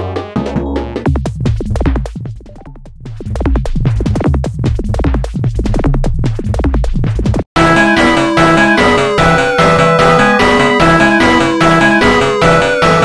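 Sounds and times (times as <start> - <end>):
electronic ringtone tune: 7.6 - 13.0.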